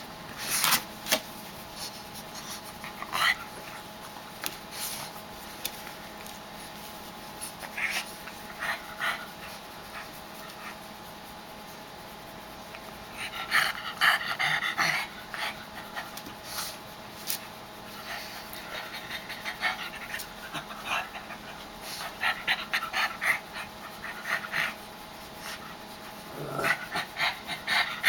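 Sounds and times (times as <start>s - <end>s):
dog breathing noisily: 17.7s - 28.0s.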